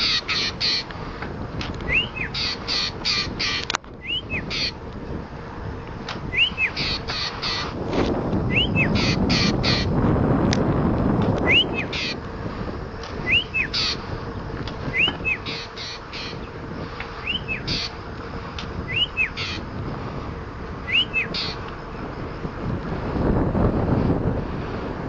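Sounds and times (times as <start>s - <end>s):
harsh bird rasps: 0.0s - 0.9s, 1.9s - 4.8s, 6.3s - 7.8s, 8.5s - 10.0s, 11.5s - 12.2s, 13.3s - 14.1s, 14.9s - 16.5s, 17.2s - 18.0s, 18.9s - 19.7s, 20.9s - 21.6s
bird whistled rising notes: 1.9s - 3.0s, 4.0s - 4.7s, 6.3s - 7.7s, 8.5s - 9.5s, 11.4s - 12.2s, 13.2s - 14.0s, 14.9s - 16.4s, 17.2s - 17.9s, 18.9s - 19.6s, 20.8s - 21.6s.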